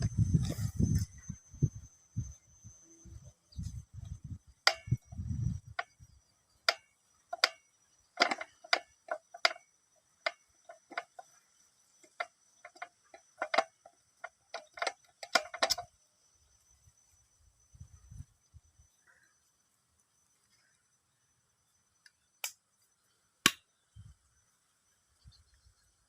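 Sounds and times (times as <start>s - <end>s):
sharp clicks and light knocks: 4.6s - 6.0s, 6.6s - 11.4s, 12.0s - 15.9s.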